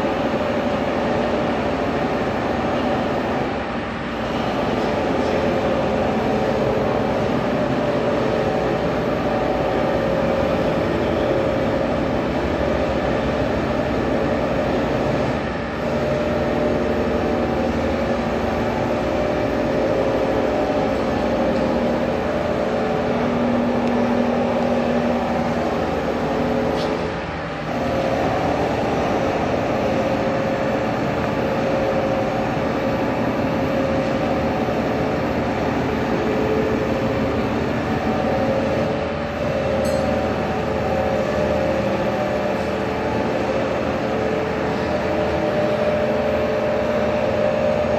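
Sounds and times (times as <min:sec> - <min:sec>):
workshop machinery humming: 0:00.0 - 0:47.9.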